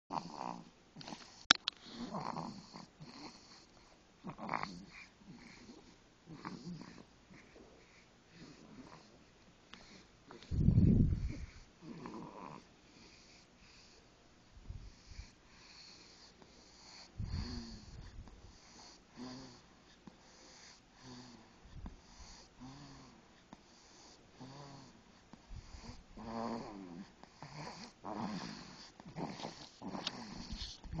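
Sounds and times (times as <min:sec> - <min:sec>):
pet snoring softly: 0:00.1 - 0:14.0, 0:14.8 - 0:31.0.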